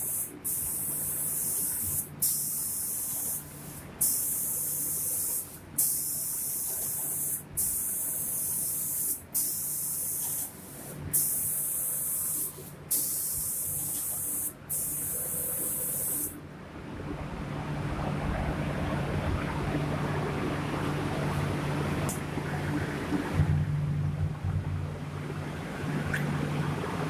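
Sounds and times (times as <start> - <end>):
spray gun hissing: 0.0 - 16.4
low machine hum: 0.0 - 27.0.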